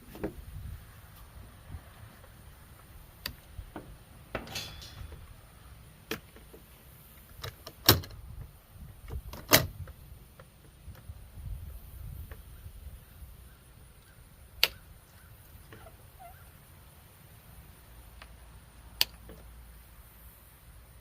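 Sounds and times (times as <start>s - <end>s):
hand tools clicking and knocking: 3.3s - 5.4s
short rattle: 3.7s - 6.3s.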